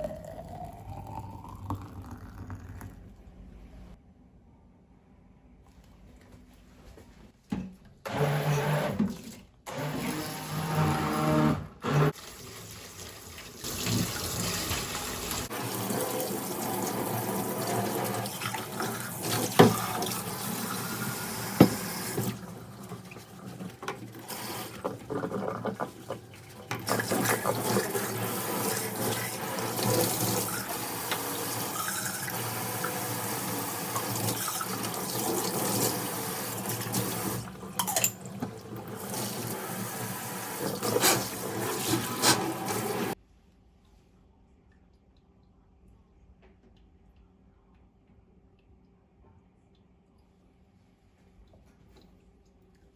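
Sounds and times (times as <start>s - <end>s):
water running from a tap: 12.1s - 43.2s.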